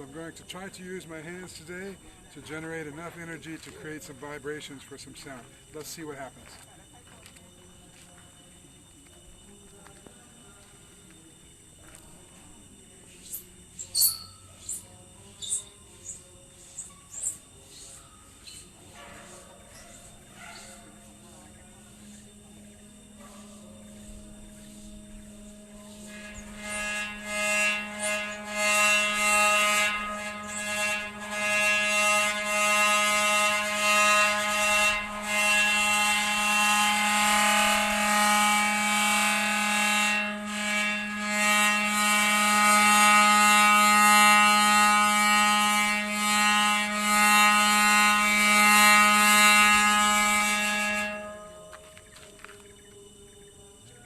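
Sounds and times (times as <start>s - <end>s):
metal instrument ringing hum: 0.0s - 54.0s
scratchy rubbing noise: 23.2s - 38.6s.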